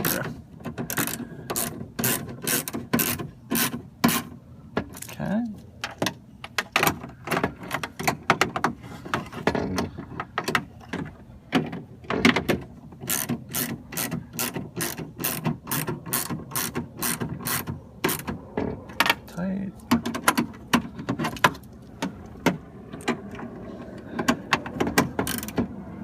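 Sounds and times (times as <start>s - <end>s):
ratchet wrench clicking: 25.2s - 25.6s.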